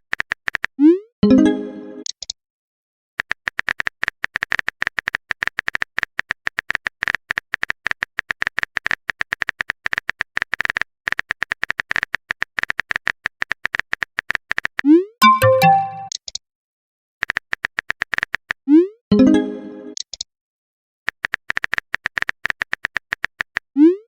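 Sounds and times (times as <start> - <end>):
keyboard typing clicks: 3.2 - 16.4.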